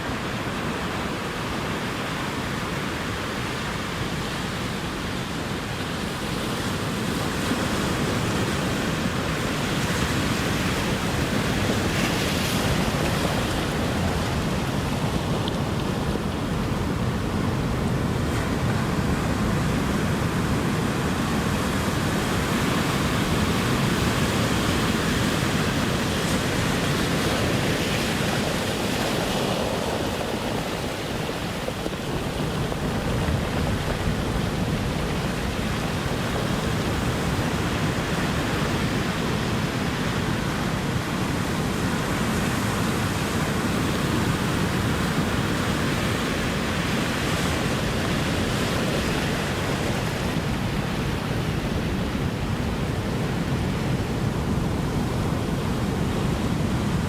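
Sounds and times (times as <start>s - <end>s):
ocean surf washing ashore: 0.0s - 57.0s.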